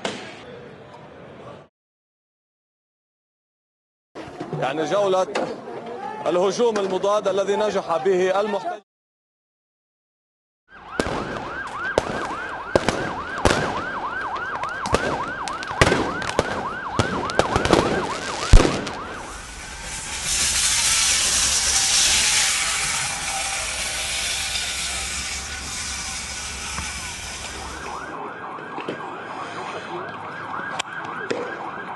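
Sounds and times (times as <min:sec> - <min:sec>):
yelping siren: 0:10.7 - 0:31.9
firework bangs: 0:10.9 - 0:28.0
loud rushing hiss: 0:18.2 - 0:28.0.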